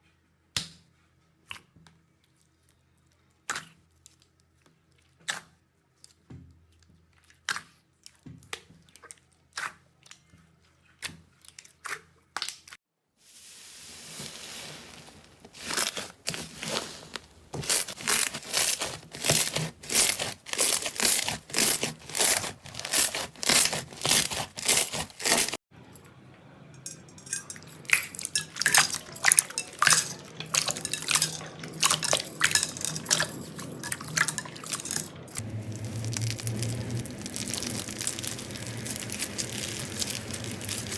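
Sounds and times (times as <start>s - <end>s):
slime crackling and popping: 15.0s - 25.6s, 34.8s - 40.9s
rhythmic slime squishing: 15.4s - 25.6s, 27.6s - 40.9s.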